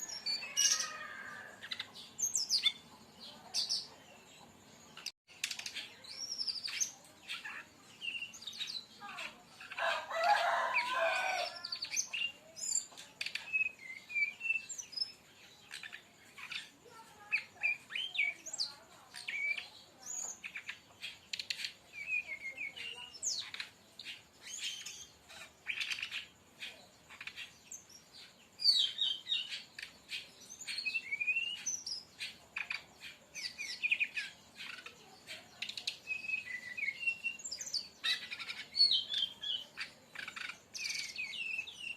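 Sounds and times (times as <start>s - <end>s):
bird singing whistles and trills: 11.8s - 16.8s, 17.4s - 28.0s, 28.6s - 41.9s.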